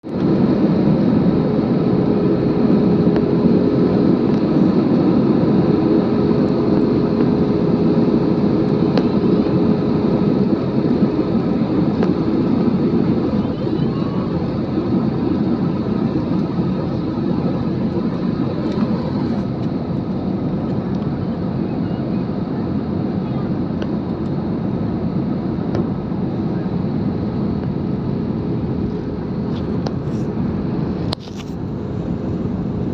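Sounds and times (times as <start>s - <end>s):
jet engine and rushing air: 0.0s - 32.9s.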